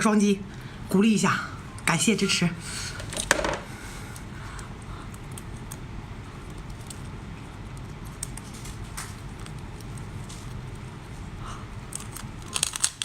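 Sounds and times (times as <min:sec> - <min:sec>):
low steady hum: 0:00.0 - 0:13.0
shell clicking and cracking: 0:03.0 - 0:11.0, 0:11.8 - 0:13.0.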